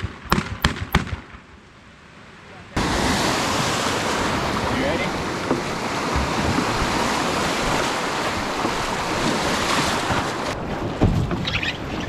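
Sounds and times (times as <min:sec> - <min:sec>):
lake waves washing onto shore: 0:02.8 - 0:12.0
wind buffeting microphone: 0:02.8 - 0:12.0.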